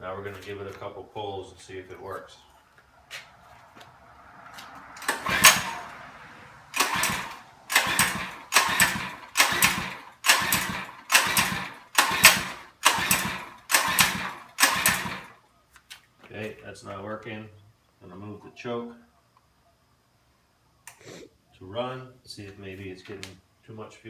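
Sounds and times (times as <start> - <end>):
recoil pull-starter cranking engine: 5.0 - 15.4.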